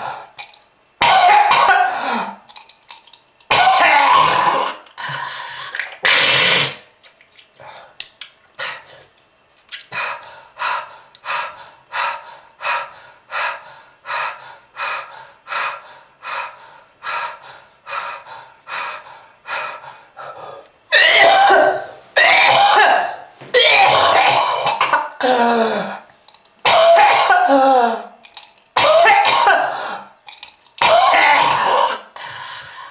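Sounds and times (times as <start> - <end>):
hacking coughs with voice: 1.0 - 2.0, 3.5 - 4.7, 20.9 - 25.2, 26.6 - 27.5, 28.8 - 29.8, 30.8 - 32.0
person coughing: 1.0 - 2.4, 3.5 - 4.8, 20.9 - 25.6, 26.6 - 28.1, 28.8 - 30.1, 30.8 - 32.1.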